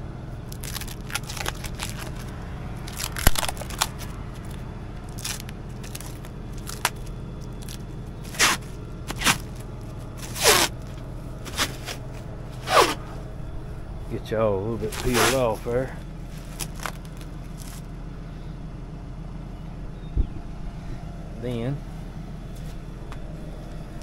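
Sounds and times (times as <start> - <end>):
steady low hum: 0.0 - 24.0
film ripping off roll: 0.5 - 4.5, 5.1 - 9.5
plastic stretch film crackling: 0.5 - 9.6, 14.9 - 15.5, 16.3 - 17.9.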